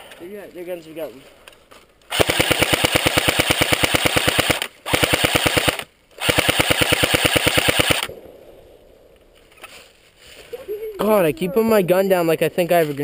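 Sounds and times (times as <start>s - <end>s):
airsoft gun full-auto bursts: 2.1s - 8.1s.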